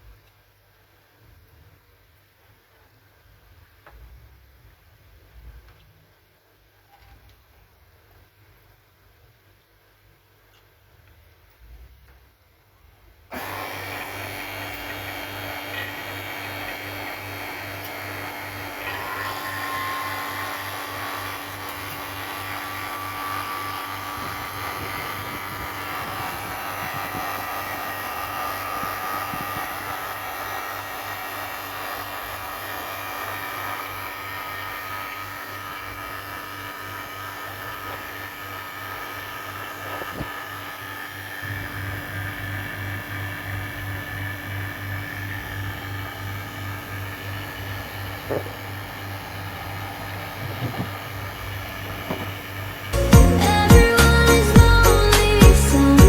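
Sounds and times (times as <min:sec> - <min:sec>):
electric motor machine running: 0:13.3 - 0:56.0.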